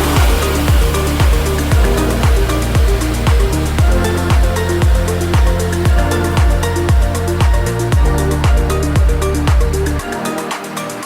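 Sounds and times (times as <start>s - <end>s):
deep kick drum: 0.0s - 10.0s
sustained bass line: 0.0s - 10.3s
hi-hat ticking: 0.0s - 11.0s.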